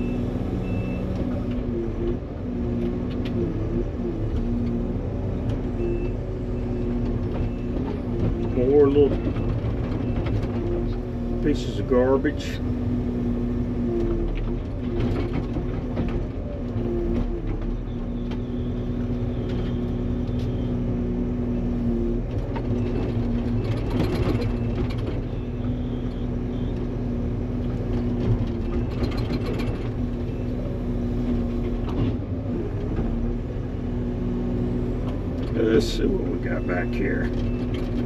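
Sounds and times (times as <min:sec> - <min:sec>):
rattling noise: 0:28.0 - 0:30.2.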